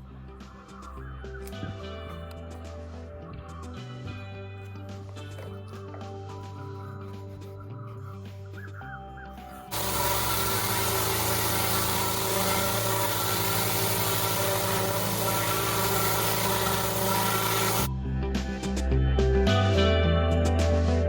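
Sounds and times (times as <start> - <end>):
background music: 0.0 - 21.0.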